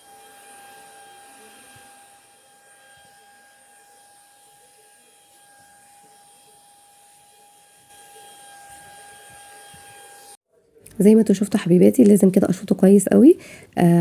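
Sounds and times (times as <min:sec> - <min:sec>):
vacuum cleaner whine: 0:00.0 - 0:10.4.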